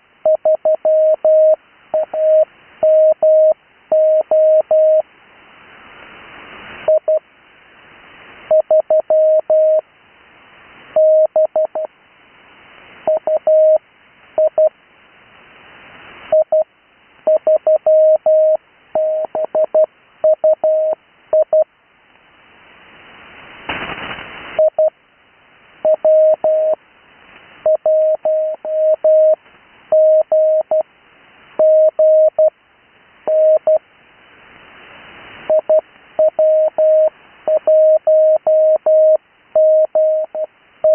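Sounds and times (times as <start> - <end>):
morse code tone: 17.3 - 21.6, 25.8 - 26.8, 27.7 - 30.8, 33.3 - 33.8, 35.5 - 40.9
radio hiss: 22.5 - 29.6
burst of static: 23.2 - 24.8.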